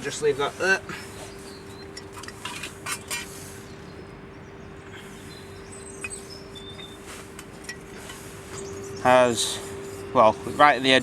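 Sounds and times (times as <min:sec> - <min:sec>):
steady background hum: 0:00.0 - 0:11.0
faint bird chirps: 0:03.0 - 0:07.2, 0:08.4 - 0:10.6.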